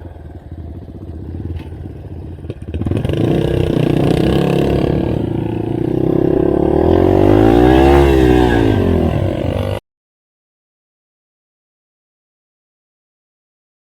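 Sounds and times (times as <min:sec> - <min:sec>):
motorcycle engine revving: 0:00.0 - 0:09.8.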